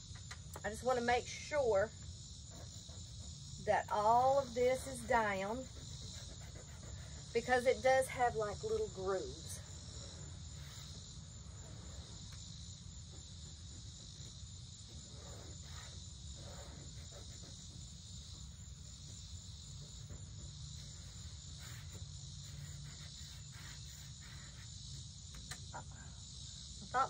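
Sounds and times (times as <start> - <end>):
insects chirring: 0.0 - 27.0
paint brush strokes: 20.8 - 24.7.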